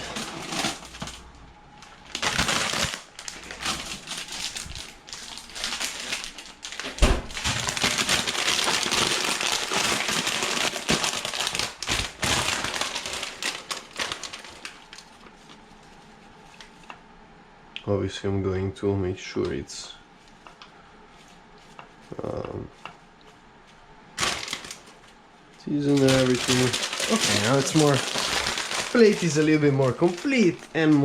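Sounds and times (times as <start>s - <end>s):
salad crinkling and rustling: 24.2s - 31.0s.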